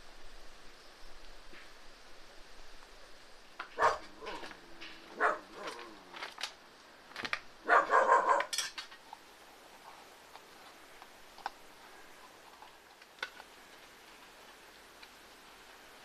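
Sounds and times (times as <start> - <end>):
dog barking: 3.8 - 4.4, 5.1 - 5.9, 7.6 - 8.6.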